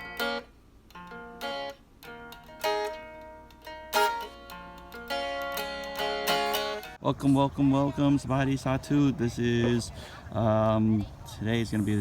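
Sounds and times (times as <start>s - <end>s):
plucked string instrument: 0.0s - 8.0s.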